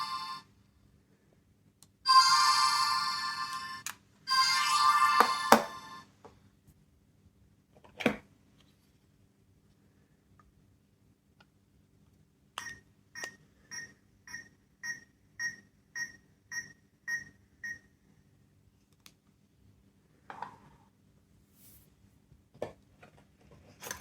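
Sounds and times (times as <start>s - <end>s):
toy beeping: 2.1s - 6.0s.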